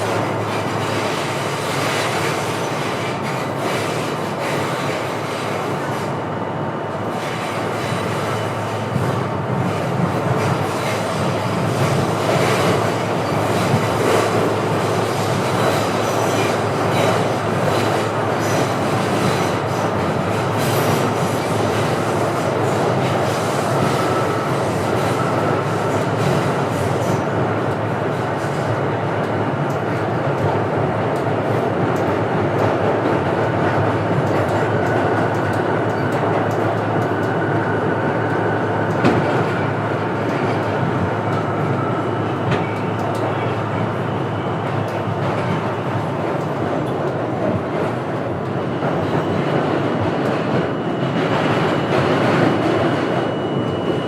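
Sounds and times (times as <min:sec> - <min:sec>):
train rumbling on rails: 0:00.0 - 0:54.0.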